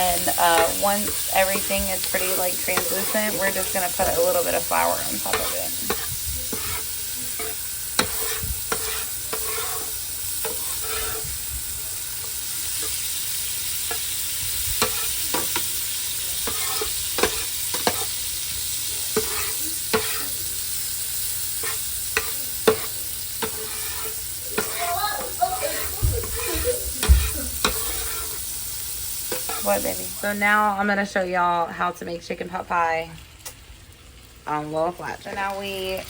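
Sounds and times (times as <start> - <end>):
utensil scraping a pan: 0.0 - 11.5, 13.8 - 15.8, 16.4 - 18.2, 19.1 - 20.4, 21.6 - 28.4, 29.2 - 30.0
vegetables sizzling in a pan: 0.0 - 36.0.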